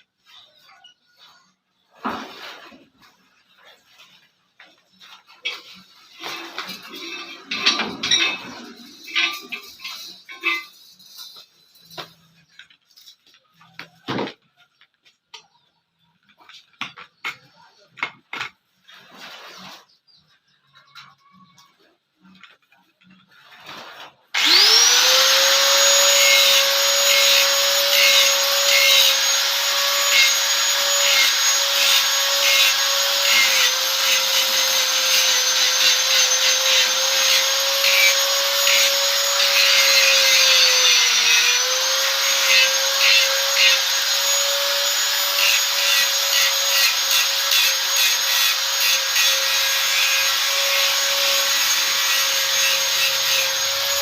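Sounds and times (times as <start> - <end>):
scratchy rubbing on steel: 4.9 - 13.3
angle grinder whining: 5.4 - 12.1, 24.4 - 54.0.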